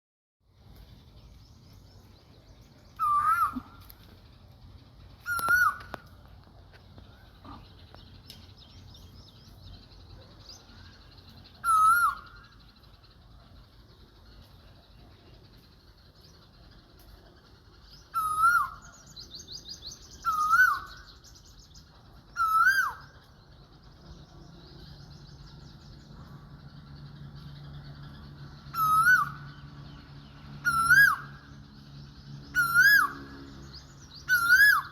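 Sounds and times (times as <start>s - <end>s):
faint bird chirping: 0.5s - 34.9s
cuckoo call: 3.0s - 4.1s, 5.2s - 6.2s, 11.6s - 12.6s, 18.1s - 19.1s, 20.2s - 21.1s, 22.4s - 23.2s, 28.7s - 29.5s, 30.6s - 31.4s, 32.5s - 33.3s, 34.2s - 34.9s.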